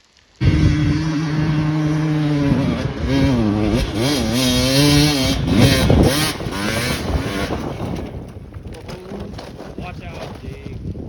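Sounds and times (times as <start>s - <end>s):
dirt bike engine revving: 0.4s - 8.5s.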